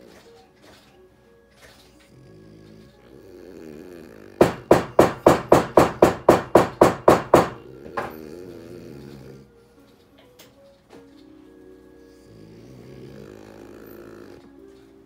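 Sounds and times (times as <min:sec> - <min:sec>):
dog snoring: 0:01.7 - 0:05.0, 0:07.3 - 0:09.9, 0:12.0 - 0:15.0.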